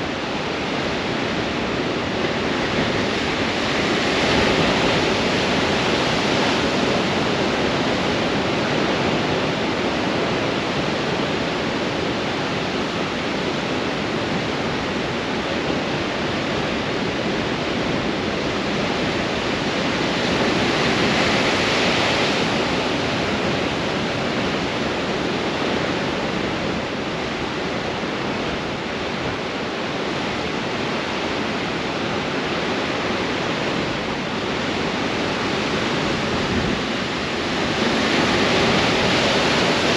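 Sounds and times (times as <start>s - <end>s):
strong wind: 0.0s - 39.9s
surf crashing against rocks: 15.9s - 39.9s.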